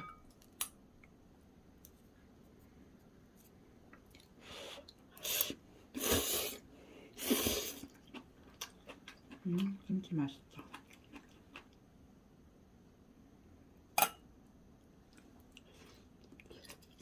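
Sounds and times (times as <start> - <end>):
person slurping noodles: 5.2 - 6.6, 7.2 - 7.8.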